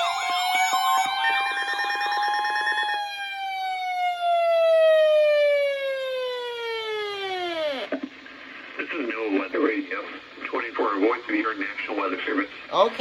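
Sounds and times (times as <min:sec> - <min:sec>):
fast warbling siren: 0:00.0 - 0:07.9
siren wailing: 0:00.0 - 0:07.9.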